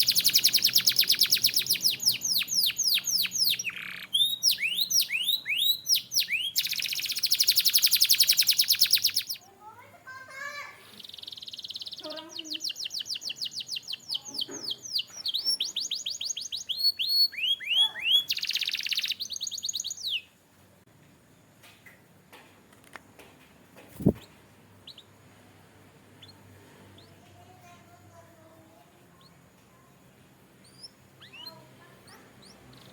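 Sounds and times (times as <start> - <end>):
canary singing fast trills: 0.0 - 9.5, 10.9 - 20.3, 23.9 - 25.4, 26.0 - 27.2, 30.4 - 32.9
faint bird chirps: 0.0 - 9.6, 10.9 - 20.4, 24.0 - 25.3, 26.1 - 32.9.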